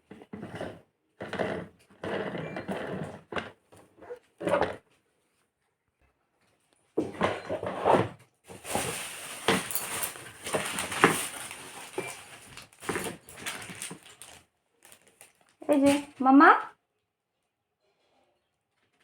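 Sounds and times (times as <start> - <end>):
packaging rustling and clicking: 8.5 - 16.2.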